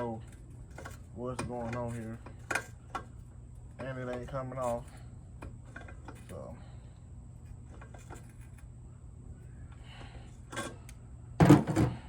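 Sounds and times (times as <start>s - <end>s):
metal clicks and scraping: 0.2s - 3.2s.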